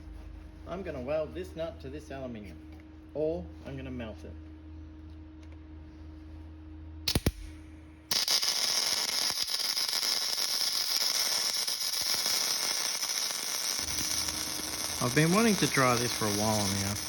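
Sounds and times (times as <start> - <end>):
welding arc crackling: 7.1 - 7.5, 8.1 - 17.0.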